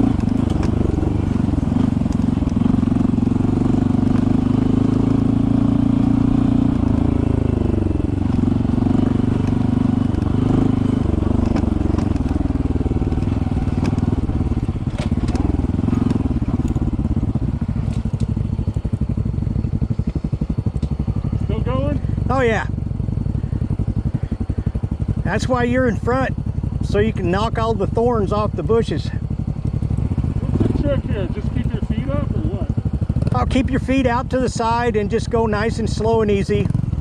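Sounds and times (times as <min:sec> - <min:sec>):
sharp clicks and knocks: 0:00.0 - 0:01.0, 0:09.3 - 0:10.5, 0:11.3 - 0:16.9, 0:17.8 - 0:19.0, 0:19.6 - 0:21.0
motorcycle engine running: 0:00.0 - 0:37.0.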